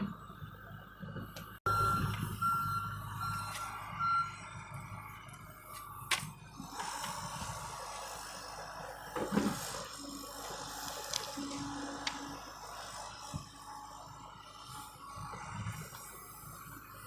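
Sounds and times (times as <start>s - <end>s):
diesel engine running: 0.0s - 17.0s
excavator travel alarm beeping: 1.2s - 6.8s.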